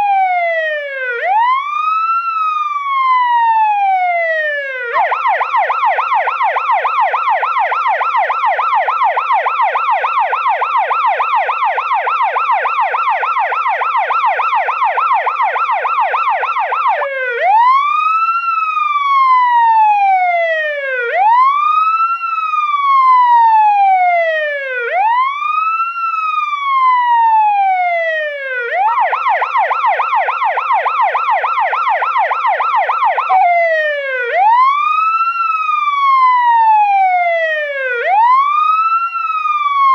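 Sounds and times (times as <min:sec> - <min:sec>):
police siren wail: 0:00.0 - 0:39.9
police siren yelp: 0:00.0 - 0:39.9.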